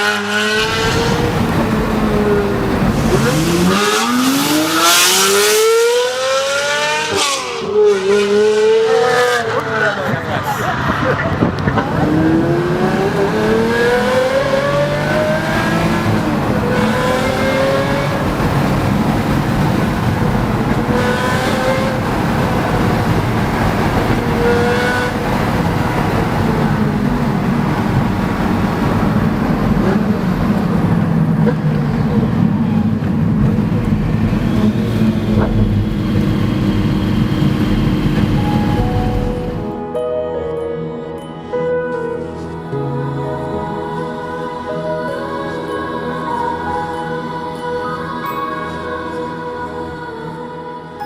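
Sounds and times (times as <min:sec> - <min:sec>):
car engine accelerating: 0:00.0 - 0:39.8.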